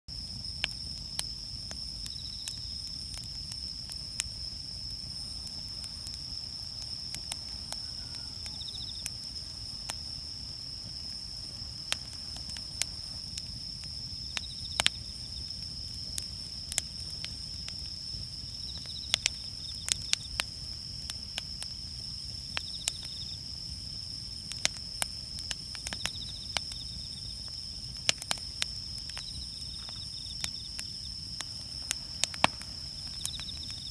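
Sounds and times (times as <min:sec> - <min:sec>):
campfire crackling: 0:00.1 - 0:33.9
fire popping: 0:00.1 - 0:33.9.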